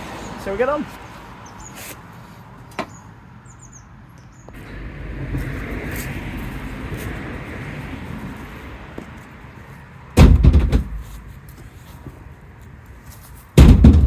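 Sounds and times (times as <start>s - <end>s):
logs thudding into truck: 10.2s - 11.3s, 13.6s - 14.0s.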